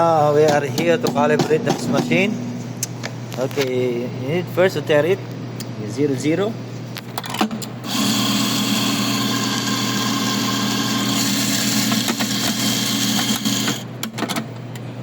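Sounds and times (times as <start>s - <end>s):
electric coffee grinder running: 7.9s - 13.8s.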